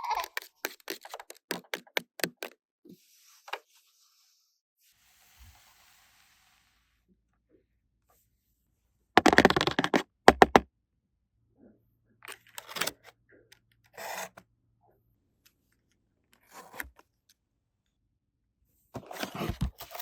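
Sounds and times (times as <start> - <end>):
toy kitchen pieces rustling: 0.0 - 2.5, 9.2 - 10.6, 12.3 - 13.1, 19.0 - 20.0.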